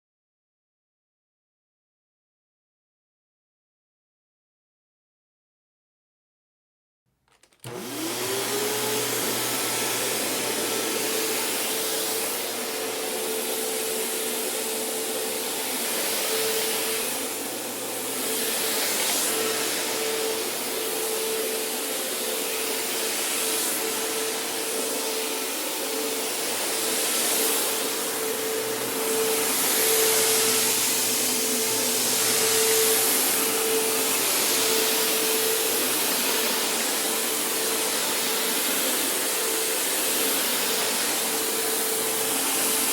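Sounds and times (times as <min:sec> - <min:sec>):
vacuum cleaner running: 0:07.4 - 0:42.9.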